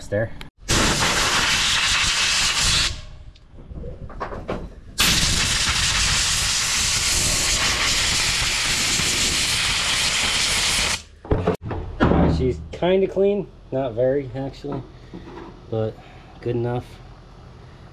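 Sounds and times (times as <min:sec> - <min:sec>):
air blow gun hissing: 0:00.7 - 0:03.0, 0:05.0 - 0:11.1.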